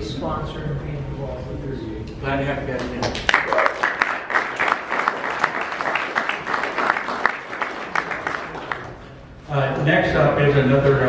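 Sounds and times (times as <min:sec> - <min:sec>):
audience applauding: 0:02.8 - 0:09.3.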